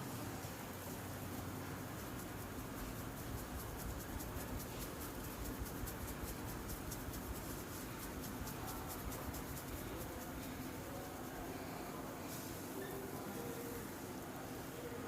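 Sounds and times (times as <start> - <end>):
hands rubbing scalp and hair: 1.9 - 11.3.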